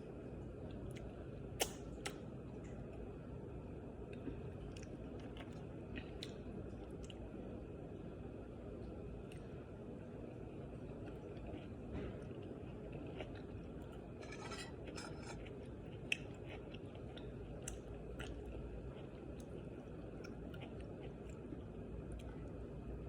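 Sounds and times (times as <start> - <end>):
person chewing food: 10.7 - 22.6.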